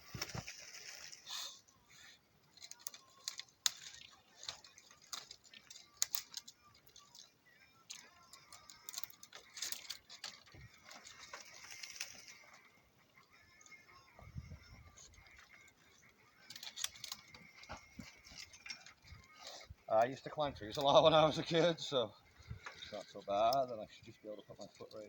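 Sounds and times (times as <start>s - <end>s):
bark and branches cracking: 0.0s - 25.0s.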